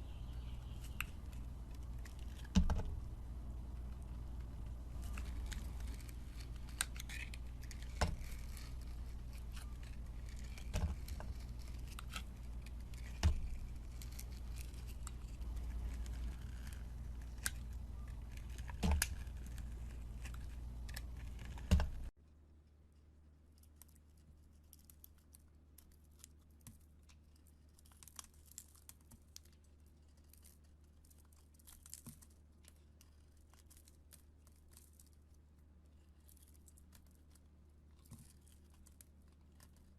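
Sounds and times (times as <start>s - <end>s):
low hum: 0.0s - 22.1s
soap crackling and crunching: 0.1s - 22.2s, 23.5s - 39.9s.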